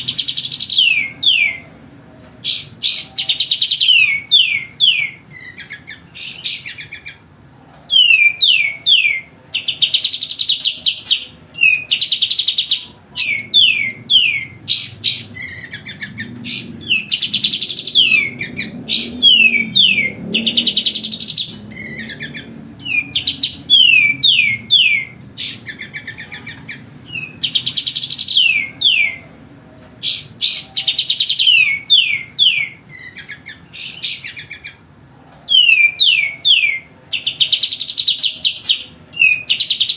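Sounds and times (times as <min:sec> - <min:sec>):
bulbul singing chattering bursts: 0:00.0 - 0:01.6, 0:07.9 - 0:29.3.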